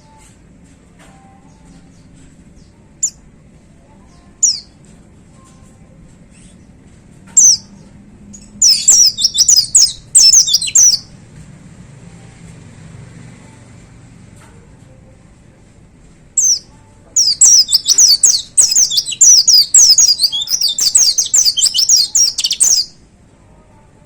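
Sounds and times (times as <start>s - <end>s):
rapid bird song burst: 8.6s - 11.1s, 17.2s - 22.9s
bird sharp high notes: 17.2s - 22.9s.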